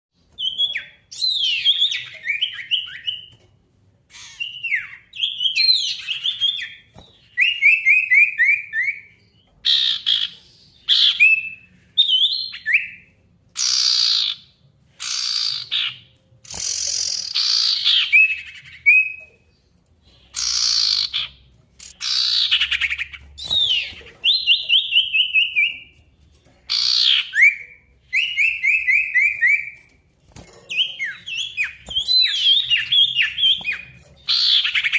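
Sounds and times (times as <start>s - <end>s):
harsh raspy bird calls: 20.1s - 25.6s.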